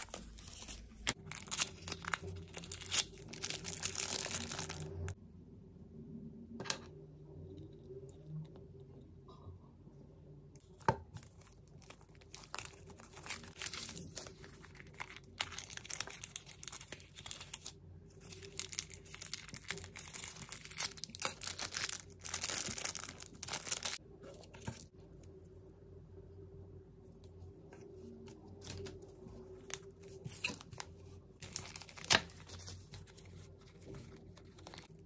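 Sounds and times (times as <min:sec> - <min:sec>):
wrapper tearing and crinkling: 0:00.0 - 0:05.2, 0:11.2 - 0:24.0, 0:31.4 - 0:33.7.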